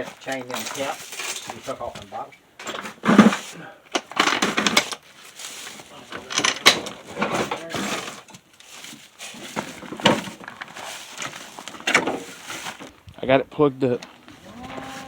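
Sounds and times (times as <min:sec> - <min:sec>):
metal clanks and rattles: 0:00.0 - 0:05.0, 0:06.1 - 0:08.4.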